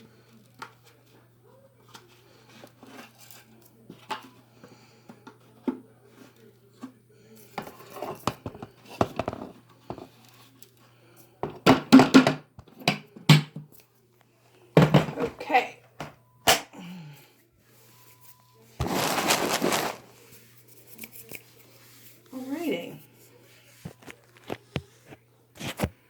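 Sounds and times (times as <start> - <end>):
small hard objects clattering: 18.8 - 20.2.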